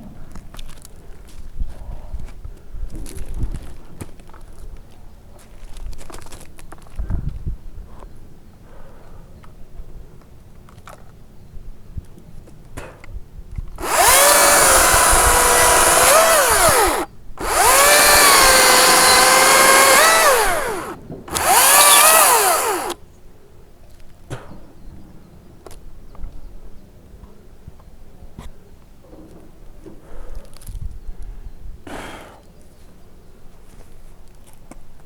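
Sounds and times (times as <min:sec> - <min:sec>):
chainsaw cutting branches: 0:13.8 - 0:23.0.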